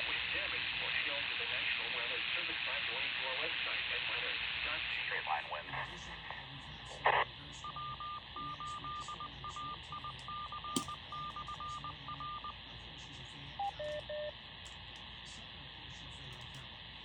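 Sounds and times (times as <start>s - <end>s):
radio hiss: 0.0s - 17.0s
morse code tone: 7.6s - 12.6s, 13.6s - 14.3s.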